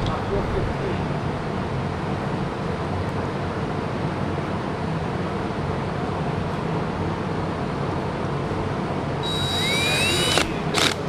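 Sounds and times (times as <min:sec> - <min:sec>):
low hum: 0:09.2 - 0:11.0
power drill whining: 0:09.2 - 0:11.0.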